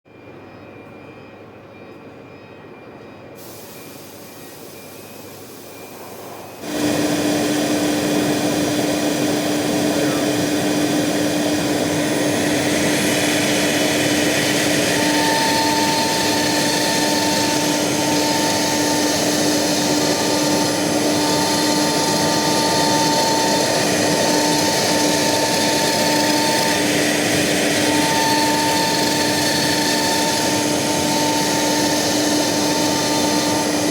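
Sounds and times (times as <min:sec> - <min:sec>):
high machine whine: 0:03.4 - 0:33.9
router whirring: 0:06.6 - 0:33.9.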